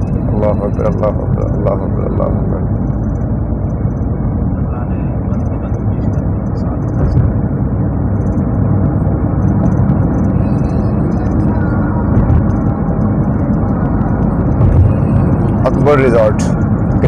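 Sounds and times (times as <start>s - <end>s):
car driving rumble: 0.0s - 17.0s.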